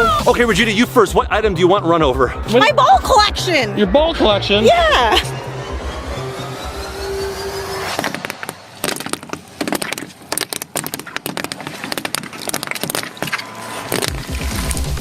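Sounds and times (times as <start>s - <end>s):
rising swoosh: 3.8s - 9.6s
balls cracking and bursting under tyres: 7.9s - 15.0s.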